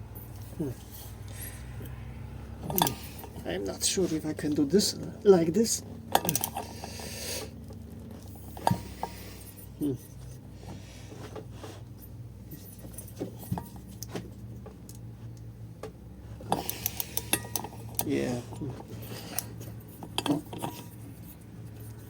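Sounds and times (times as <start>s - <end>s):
metal tools clinking: 6.1s - 6.8s, 16.5s - 22.0s.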